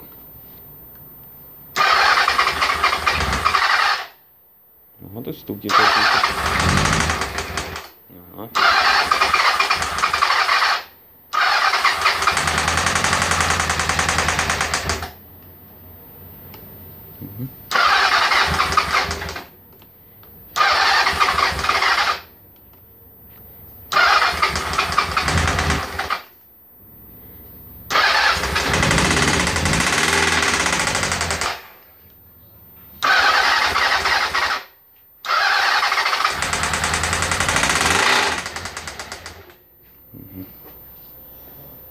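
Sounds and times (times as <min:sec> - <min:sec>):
electric starter cranking engine: 0:01.8 - 0:04.2, 0:05.7 - 0:08.0, 0:08.6 - 0:15.2, 0:17.7 - 0:19.5, 0:20.6 - 0:22.3, 0:23.9 - 0:26.3, 0:27.9 - 0:31.8, 0:33.0 - 0:39.6.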